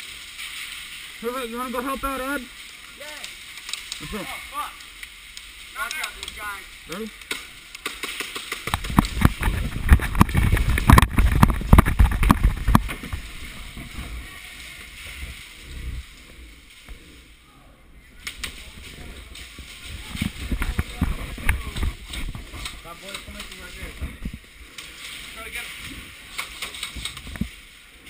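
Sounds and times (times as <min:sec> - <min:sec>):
rustling: 0:00.0 - 0:28.0
thumps and knocks: 0:07.8 - 0:13.2.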